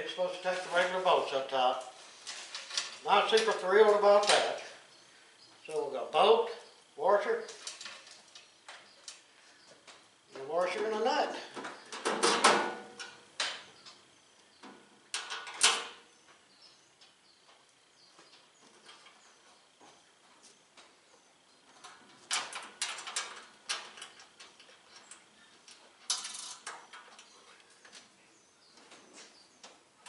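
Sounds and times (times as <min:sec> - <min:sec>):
metal bolts clinking and rattling: 0:15.2 - 0:15.9, 0:21.8 - 0:27.4.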